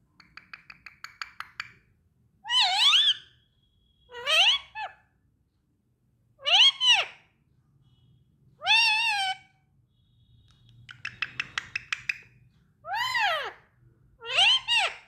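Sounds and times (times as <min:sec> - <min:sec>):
parrot clicking pulses: 0:00.1 - 0:01.8, 0:10.7 - 0:12.2
parrot calling: 0:02.4 - 0:03.3, 0:04.1 - 0:05.0, 0:06.4 - 0:07.2, 0:12.8 - 0:13.6, 0:14.2 - 0:15.0.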